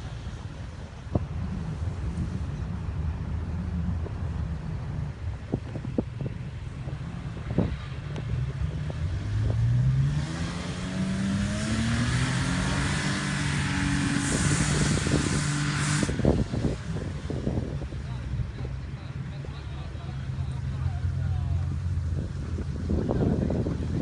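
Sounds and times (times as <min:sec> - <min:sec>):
off-road engine revving: 0:06.7 - 0:24.0.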